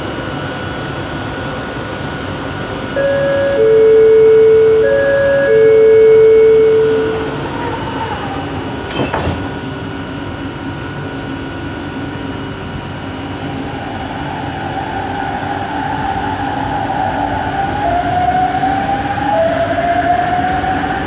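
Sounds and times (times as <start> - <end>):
train running noise: 0.0 - 21.0
train whine: 0.0 - 21.0
train motor tones: 2.6 - 9.9.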